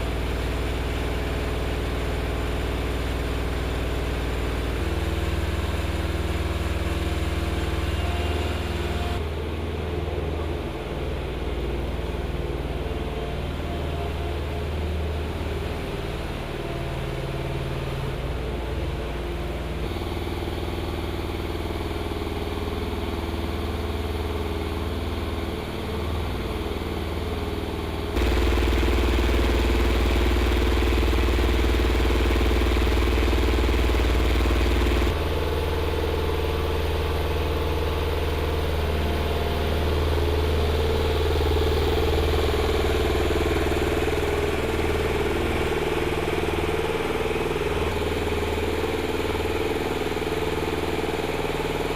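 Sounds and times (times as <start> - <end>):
machinery engines humming: 28.2 - 36.0.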